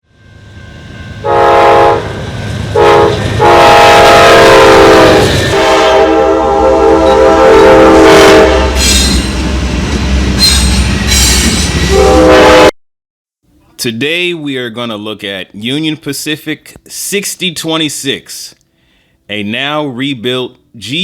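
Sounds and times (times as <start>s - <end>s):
passing train rumble: 0.0s - 12.7s
locomotive air horn blasts: 1.2s - 8.9s, 11.9s - 12.7s.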